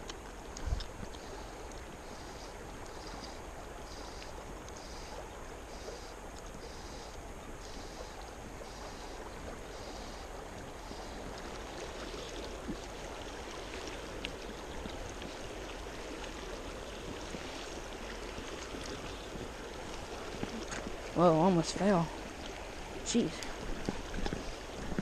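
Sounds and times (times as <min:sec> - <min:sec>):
faint clicks: 0:00.0 - 0:05.0
river water rushing: 0:00.0 - 0:25.0
faint pulsing high hiss: 0:00.3 - 0:25.0.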